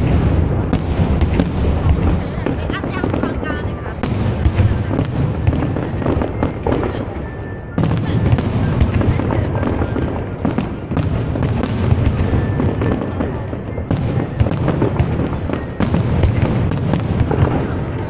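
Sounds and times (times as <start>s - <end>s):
fireworks bangs and crackles: 0.0s - 18.0s.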